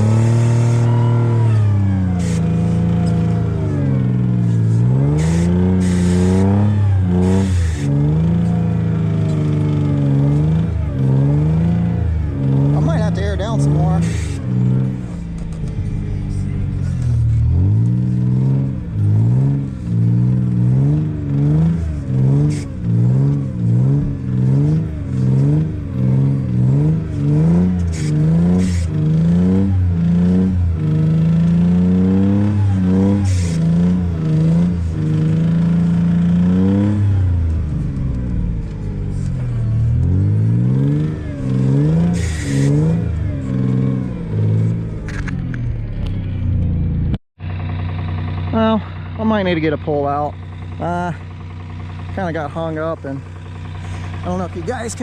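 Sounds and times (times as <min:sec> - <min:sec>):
engine revving: 0:00.0 - 0:55.0
engine knocking: 0:47.4 - 0:55.0.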